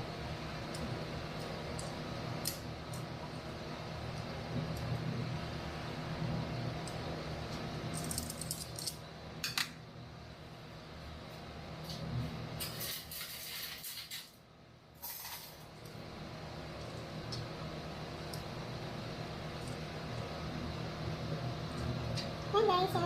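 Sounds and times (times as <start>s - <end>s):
steady low hum: 0.0s - 23.0s
metal kitchenware clattering: 15.0s - 15.6s.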